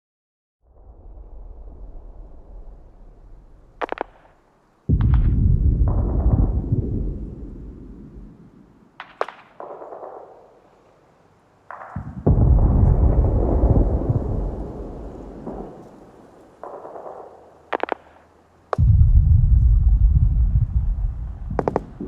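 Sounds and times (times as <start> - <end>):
gunshot cracks: 3.8 - 6.6, 9.0 - 10.6, 11.7 - 19.1, 21.5 - 22.0
distant gunshots: 3.8 - 8.4, 9.0 - 10.8, 11.7 - 19.2, 21.4 - 22.0
heavy explosion rumbling: 4.9 - 8.3, 12.0 - 15.8, 18.8 - 22.0.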